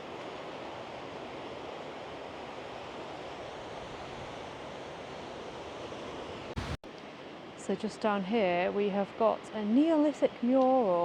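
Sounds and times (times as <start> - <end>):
wind: 0.0 - 11.0
sea waves rushing: 6.0 - 6.8.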